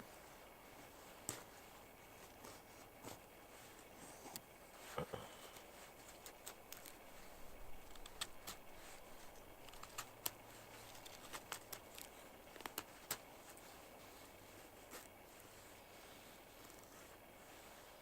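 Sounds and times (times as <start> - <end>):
sharp little clicks and snaps: 6.1 - 7.0, 7.8 - 8.6, 9.3 - 13.3.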